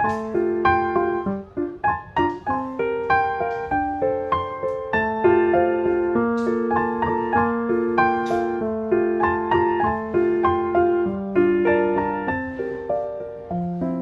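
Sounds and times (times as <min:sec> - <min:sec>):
gentle piano melody: 0:00.0 - 0:14.0.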